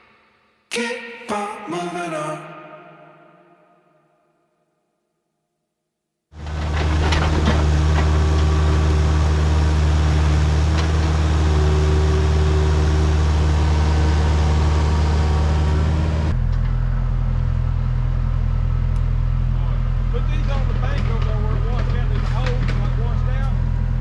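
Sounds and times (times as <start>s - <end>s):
diesel engine running: 6.4s - 24.0s.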